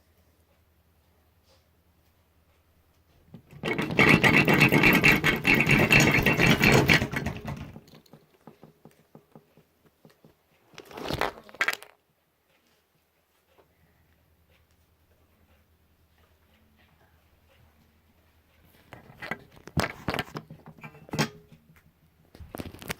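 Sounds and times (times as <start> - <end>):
dense crackling and scraping: 18.7 - 21.4, 22.4 - 22.9.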